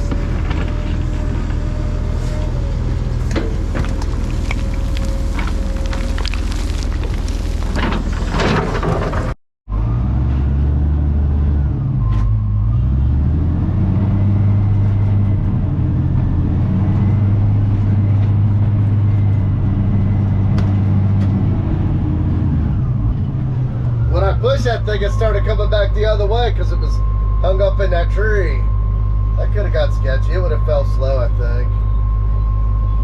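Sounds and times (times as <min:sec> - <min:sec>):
crackling noise: 0:00.0 - 0:09.4
diesel engine drone under load: 0:00.0 - 0:33.0.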